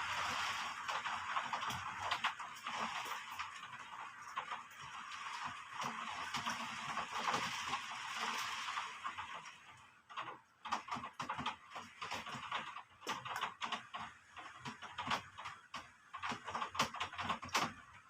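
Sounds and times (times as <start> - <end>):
rain hiss: 0.0 - 9.7
water drips and taps: 0.9 - 17.7.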